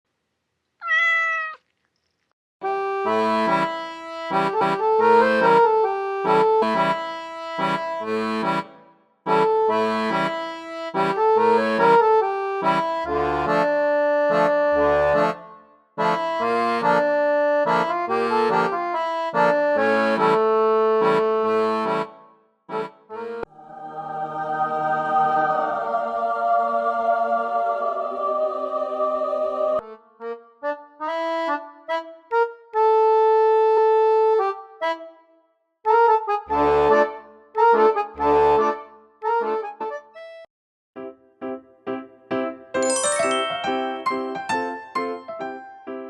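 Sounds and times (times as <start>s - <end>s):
cat meowing: 0.8s - 1.7s
background music: 2.6s - 34.8s, 41.5s - 46.0s.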